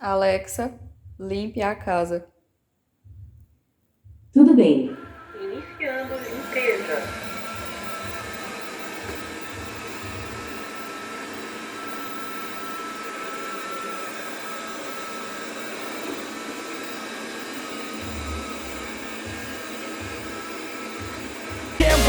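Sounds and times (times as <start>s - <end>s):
robot vacuum whirring: 4.9s - 22.0s.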